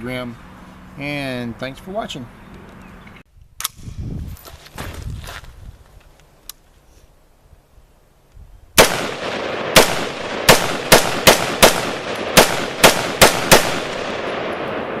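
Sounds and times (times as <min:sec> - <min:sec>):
rifle shots with echo: 0:08.8 - 0:15.0.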